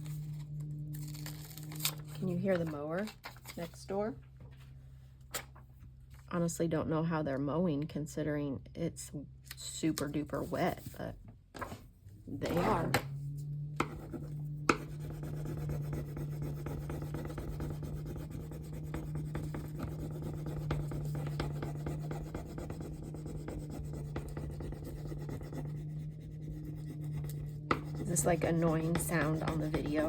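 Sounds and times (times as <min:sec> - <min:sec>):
tool rubbing on paper: 0:13.8 - 0:30.0.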